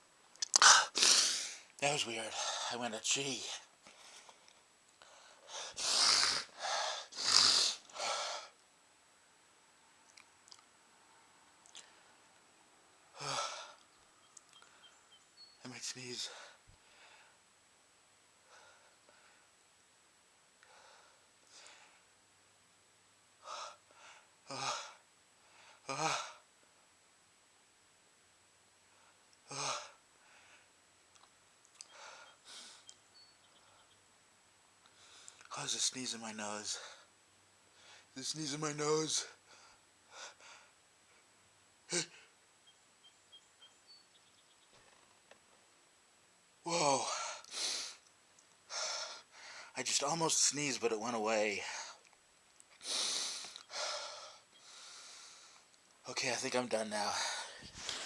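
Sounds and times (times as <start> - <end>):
man's breathy nasal bursts: 0.5 - 1.7, 5.0 - 8.6, 31.8 - 32.9, 47.1 - 48.1, 52.8 - 55.7, 57.2 - 58.0
faint clicks: 31.1 - 32.0, 32.8 - 33.0.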